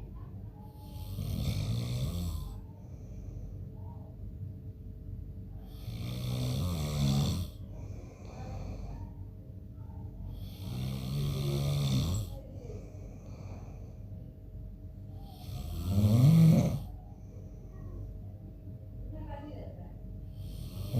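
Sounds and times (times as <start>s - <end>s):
man snoring: 0.8s - 2.6s, 5.7s - 8.3s, 10.4s - 12.4s, 15.1s - 16.9s, 20.3s - 20.9s.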